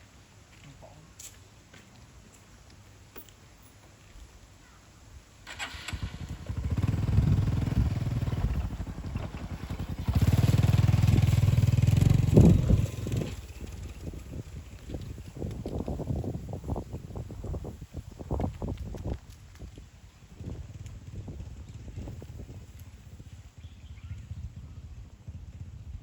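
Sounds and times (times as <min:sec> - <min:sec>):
small engine running: 0:05.5 - 0:14.4.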